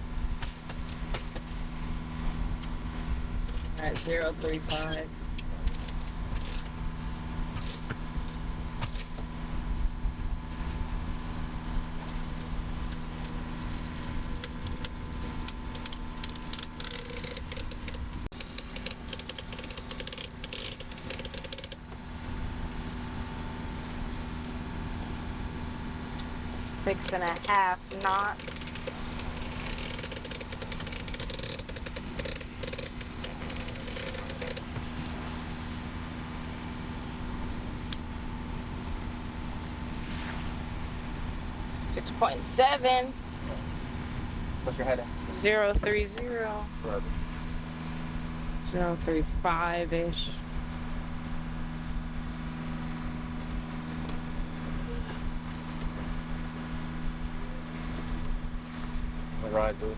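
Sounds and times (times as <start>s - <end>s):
low hum: 0.0s - 59.9s
rush of boat through water: 0.0s - 59.9s
wind: 0.0s - 59.9s
crackle and splash: 5.3s - 42.0s.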